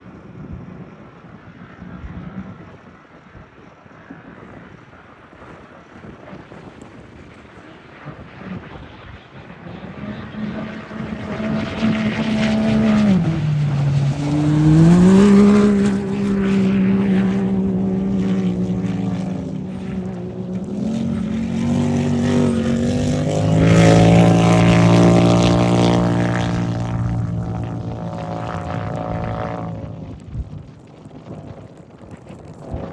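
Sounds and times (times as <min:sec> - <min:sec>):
off-road vehicle engines running hard: 0:09.5 - 0:32.9.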